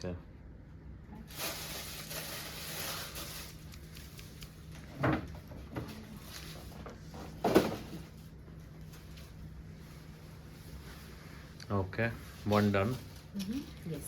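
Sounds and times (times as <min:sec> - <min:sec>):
packaging rustling: 0:01.3 - 0:04.8.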